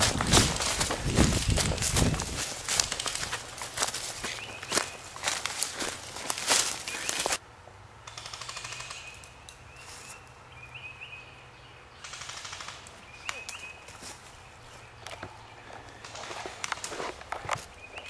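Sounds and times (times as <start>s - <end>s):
footsteps crunching dry leaves: 0.0s - 7.4s, 9.8s - 10.2s, 13.5s - 14.9s.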